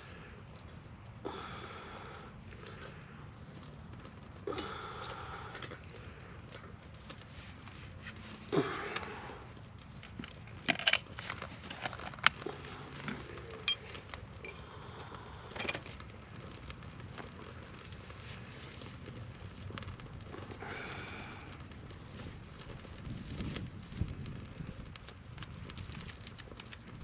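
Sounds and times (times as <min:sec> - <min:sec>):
rustling of bark: 0:02.6 - 0:27.0
twigs snapping: 0:25.4 - 0:27.0.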